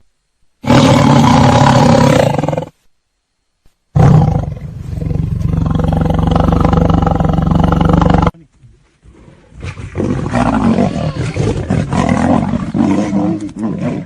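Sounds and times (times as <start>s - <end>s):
lion roaring: 0.6s - 2.7s, 4.0s - 8.4s, 9.6s - 14.0s.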